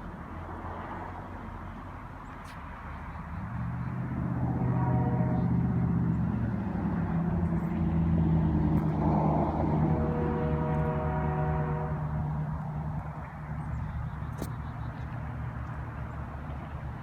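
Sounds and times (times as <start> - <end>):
diesel locomotive engine rumbling: 0.0 - 17.0
multi-note train horn chord: 4.4 - 6.0, 9.4 - 12.6.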